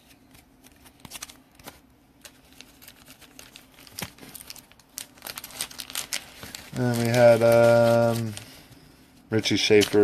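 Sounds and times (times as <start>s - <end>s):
trading cards being handled: 0.0s - 8.8s, 9.4s - 10.0s.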